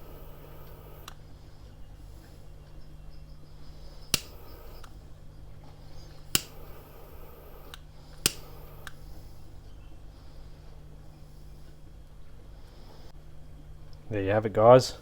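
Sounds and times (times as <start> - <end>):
sharp clicks: 0.0 - 1.2, 3.9 - 5.0, 6.1 - 9.0
low steady hum: 0.0 - 15.0.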